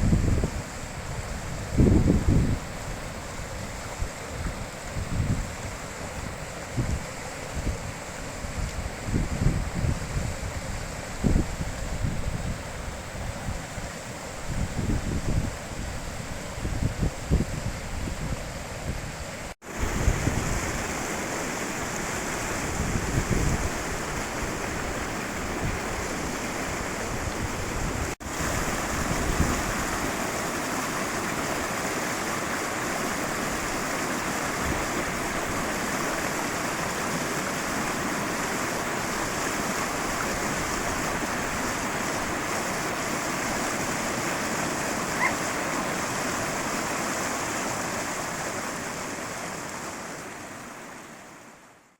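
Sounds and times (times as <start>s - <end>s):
wind gusts on microphone: 0.0s - 49.3s
river water rushing: 19.4s - 51.9s.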